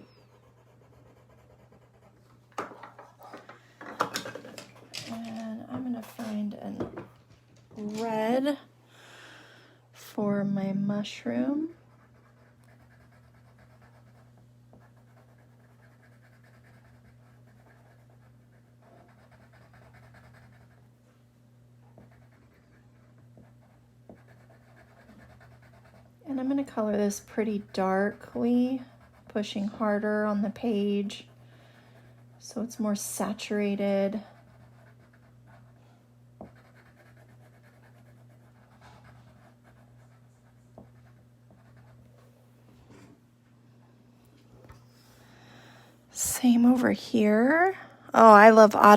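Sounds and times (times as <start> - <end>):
steady hum: 0.0 - 48.9
pencil scratching on paper: 0.1 - 2.3, 11.9 - 20.8, 21.9 - 30.0, 33.6 - 35.8, 36.4 - 42.0.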